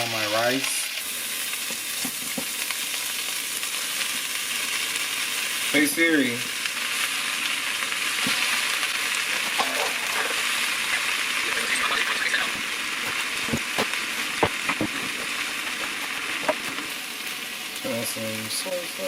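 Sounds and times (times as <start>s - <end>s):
onions and peppers sizzling in a pan: 0.0s - 19.0s
short knocks: 13.1s - 15.4s.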